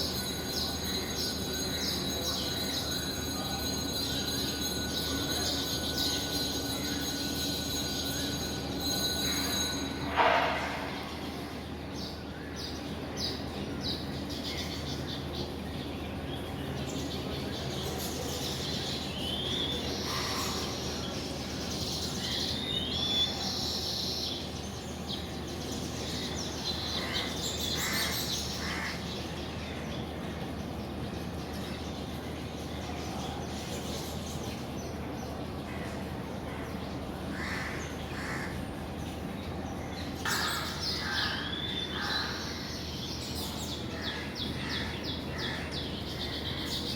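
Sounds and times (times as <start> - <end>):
birds chirping: 0.0 - 46.9
harsh crow-like bird calls: 26.9 - 29.1, 37.3 - 38.7, 40.2 - 42.8, 43.9 - 46.9.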